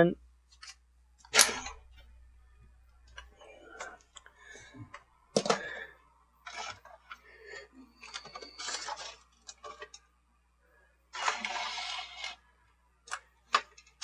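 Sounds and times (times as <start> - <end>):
plastic parts clicking: 3.1 - 7.2, 8.0 - 10.1, 13.0 - 14.0.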